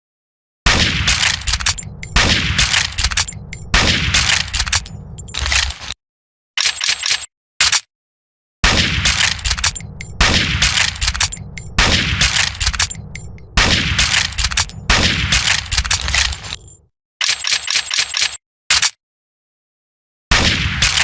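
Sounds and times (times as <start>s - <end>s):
rifle shots with echo: 0.7s - 4.6s, 8.6s - 16.4s
metallic rifle bolt clicks: 1.1s - 5.8s, 9.1s - 19.0s.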